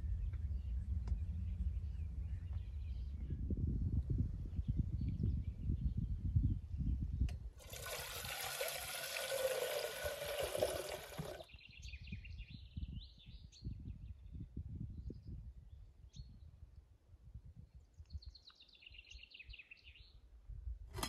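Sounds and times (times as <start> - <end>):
running water rushing: 7.6 - 11.5.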